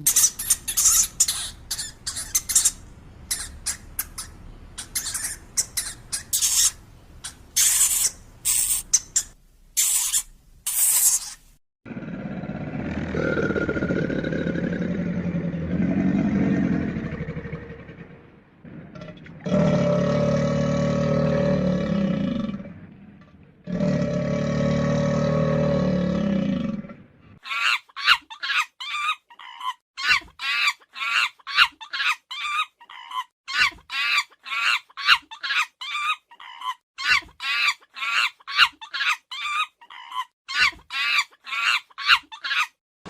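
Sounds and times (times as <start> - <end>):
short high-pitched animal calls: 3.3 - 11.4.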